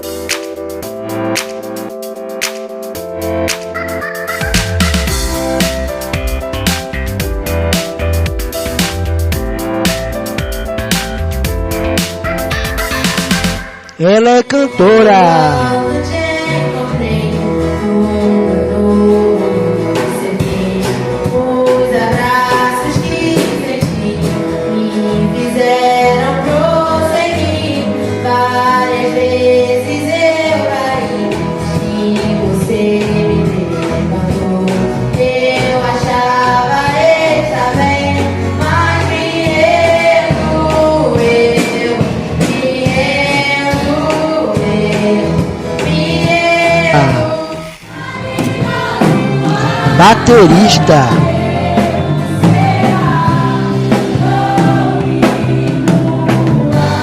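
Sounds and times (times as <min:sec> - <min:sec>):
gospel band accompaniment: 0:04.6 - 0:57.0
woman singing: 0:14.3 - 0:50.0.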